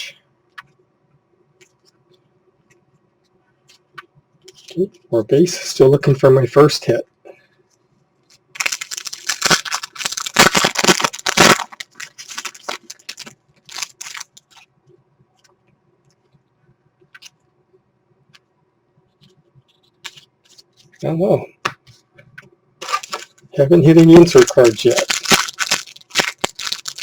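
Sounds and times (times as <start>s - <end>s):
cards being handled: 8.3s - 14.7s, 19.2s - 21.0s, 22.8s - 27.0s
card pack wrapper tearing: 8.6s - 14.6s, 22.8s - 27.0s.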